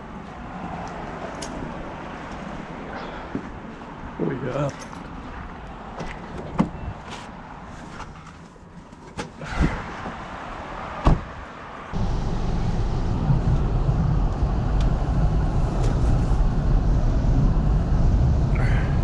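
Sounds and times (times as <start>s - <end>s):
car heater blower rushing air: 9.4s - 19.0s
sharp knocks inside car: 11.0s - 11.3s.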